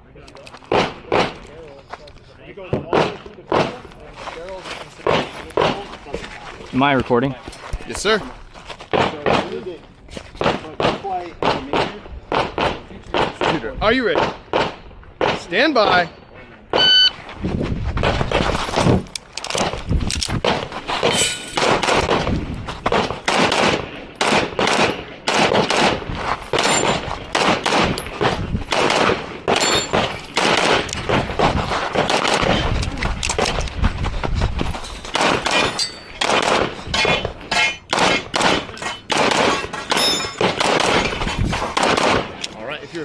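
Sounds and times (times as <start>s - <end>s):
pistol shots: 0.7s - 1.4s, 10.4s - 15.5s, 21.6s - 22.3s, 22.9s - 32.7s, 35.1s - 37.3s, 37.9s - 42.4s
start signal: 16.8s - 17.2s.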